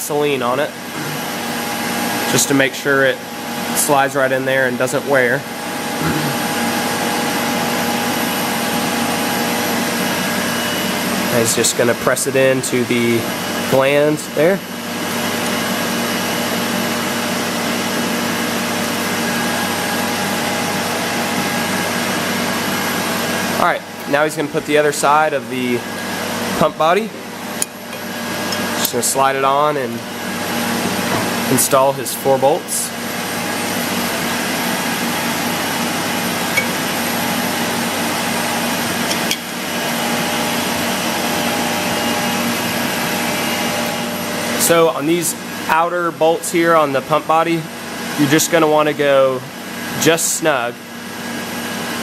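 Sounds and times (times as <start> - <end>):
machine motor droning: 0.1 - 48.8
machine drone: 4.7 - 13.2.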